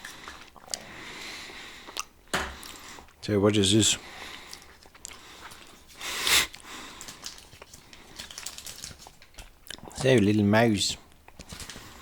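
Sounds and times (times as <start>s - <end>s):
packaging rustling: 6.6s - 9.6s, 11.4s - 12.0s.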